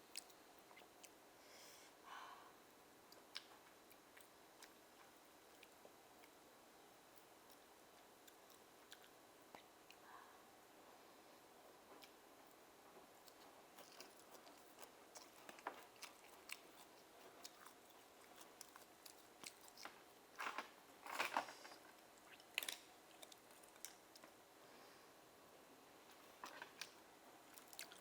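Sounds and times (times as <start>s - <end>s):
wet chewing and mouth sounds: 0.0s - 1.2s, 3.1s - 6.4s, 7.0s - 10.0s, 11.9s - 20.7s, 26.1s - 28.0s.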